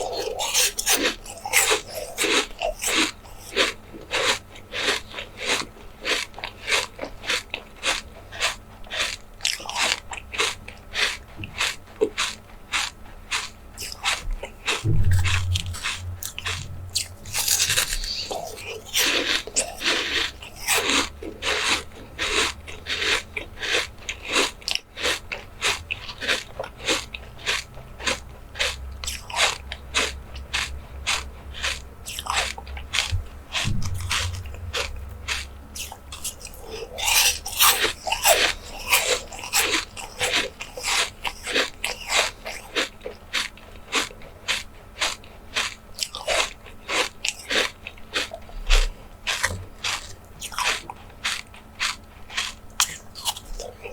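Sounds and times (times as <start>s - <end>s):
person chewing crunchy food: 0.0s - 53.9s.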